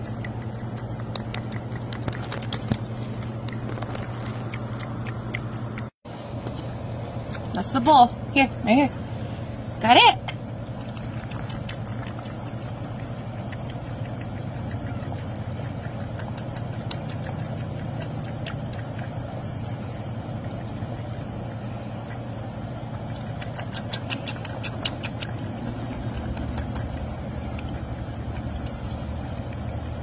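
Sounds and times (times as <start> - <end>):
low mechanical hum: 0.0 - 30.0
sharp clicks: 23.3 - 29.6.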